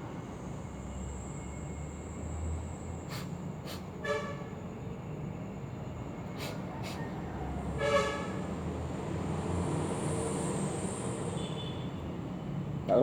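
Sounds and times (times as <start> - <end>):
low traffic rumble: 0.0 - 13.0
vehicle horn toot: 4.0 - 4.6, 7.8 - 8.5, 11.4 - 11.9.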